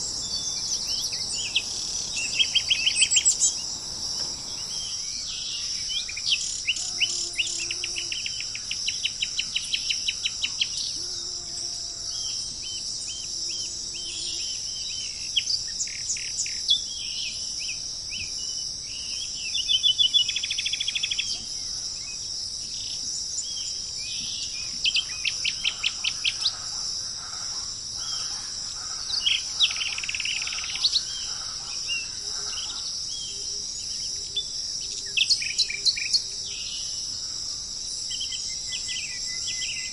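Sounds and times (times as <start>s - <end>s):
high-pitched insect drone: 0.0s - 5.1s
songbirds singing: 0.0s - 10.9s, 18.2s - 39.9s.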